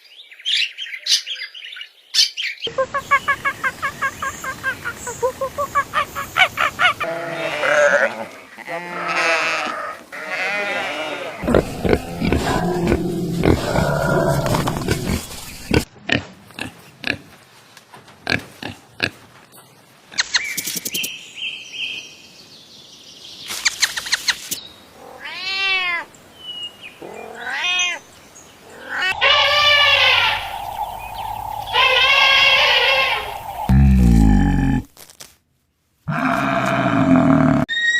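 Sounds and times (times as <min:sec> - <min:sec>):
long loud animal calls: 0:05.7 - 0:15.8, 0:28.6 - 0:34.9
short pitched animal calls: 0:28.7 - 0:34.8.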